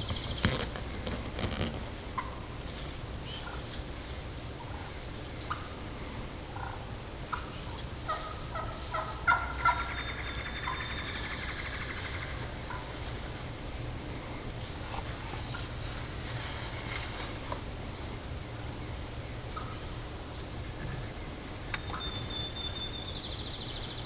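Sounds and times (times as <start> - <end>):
turkey hen clucking: 6.6 - 12.9.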